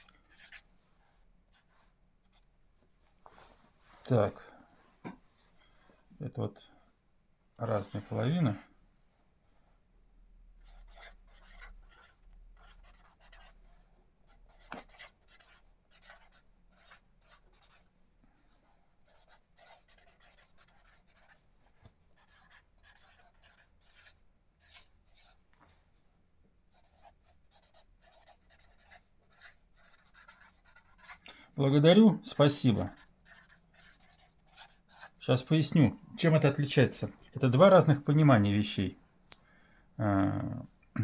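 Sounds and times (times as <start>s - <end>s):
pen scratching on paper: 0.0s - 0.7s, 10.6s - 13.6s, 14.3s - 17.9s, 19.0s - 21.5s, 22.2s - 25.4s, 26.7s - 35.5s.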